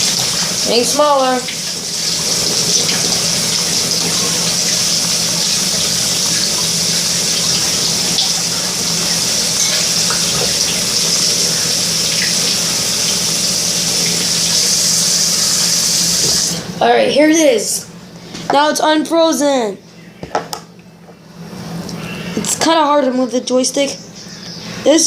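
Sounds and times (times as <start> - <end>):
tap water running into sink: 0.0 - 16.6.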